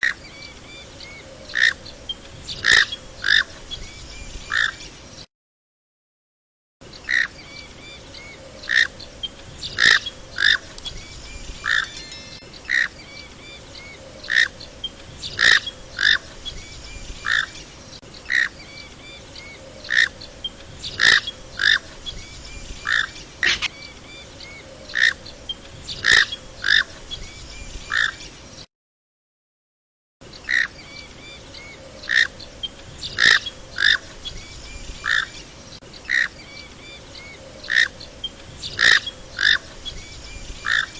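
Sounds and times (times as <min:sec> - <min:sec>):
duck calling in sharp notes: 0:23.4 - 0:23.7.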